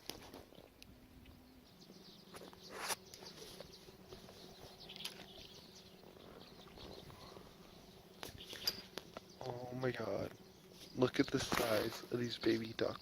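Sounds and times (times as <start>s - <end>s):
faint bird chirps: 0.5s - 9.7s.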